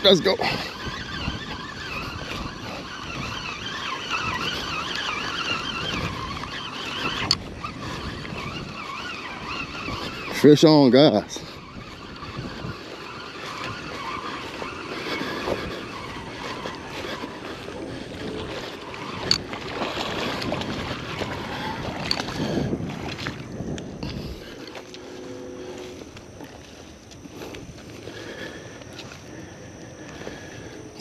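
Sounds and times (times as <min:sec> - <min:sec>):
wind buffeting microphone: 0:00.0 - 0:31.0
fish splashing and thrashing in water: 0:13.9 - 0:27.0.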